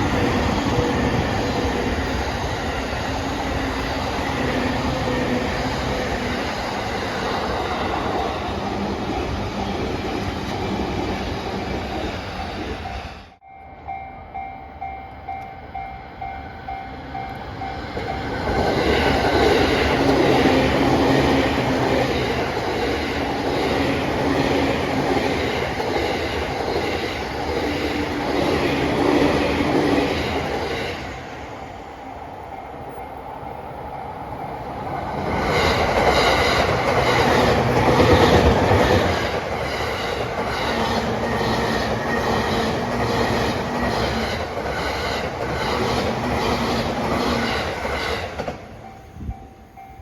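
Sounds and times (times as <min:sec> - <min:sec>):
level crossing warning bell: 0:12.8 - 0:18.7, 0:48.8 - 0:50.0
train wheels clattering on rails: 0:35.0 - 0:50.0.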